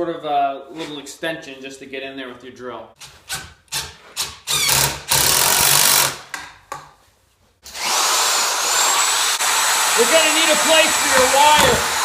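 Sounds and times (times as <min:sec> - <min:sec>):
drill driving screw into wood: 0:03.3 - 0:06.2, 0:07.6 - 0:12.0.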